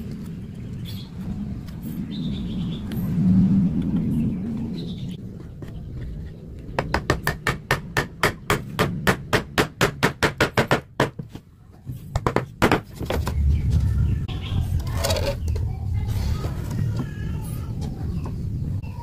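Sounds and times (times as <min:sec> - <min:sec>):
low rumble: 0:00.0 - 0:09.6, 0:13.1 - 0:19.0.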